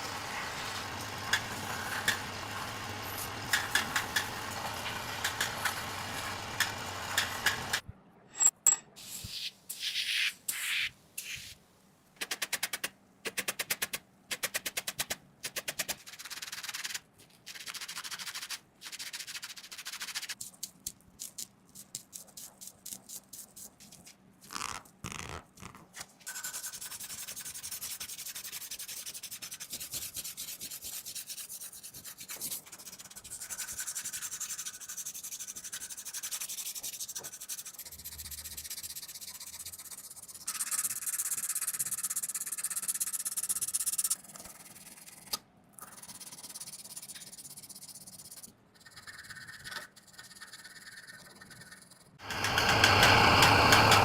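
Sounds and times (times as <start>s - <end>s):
sanding on metal: 26.3s - 44.1s.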